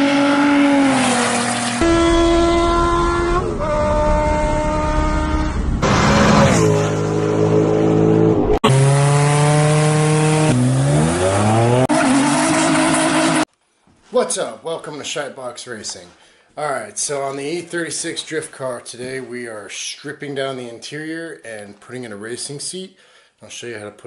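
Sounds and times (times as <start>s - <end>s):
car engine revving: 0.0s - 13.5s.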